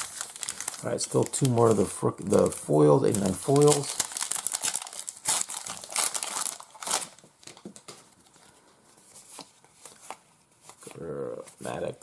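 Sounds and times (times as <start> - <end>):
wrapper crinkling and tearing: 0.0 - 7.9.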